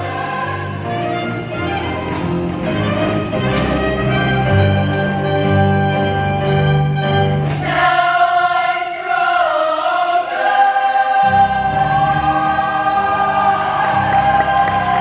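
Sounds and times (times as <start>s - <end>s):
women's choir singing: 0.0s - 1.4s, 7.5s - 15.0s
low band accompaniment: 0.0s - 8.0s.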